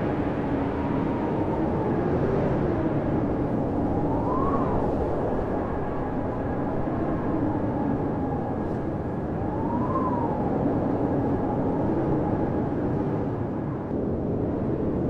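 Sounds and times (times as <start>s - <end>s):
blizzard wind howling: 0.0s - 15.0s
wind whistling: 0.0s - 15.0s.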